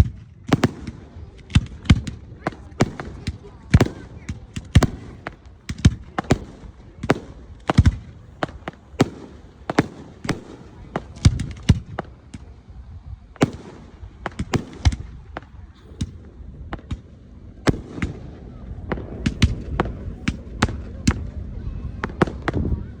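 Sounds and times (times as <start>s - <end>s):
fireworks bangs and cracks: 0.0s - 12.7s, 13.4s - 22.9s
low rumble: 0.0s - 23.0s.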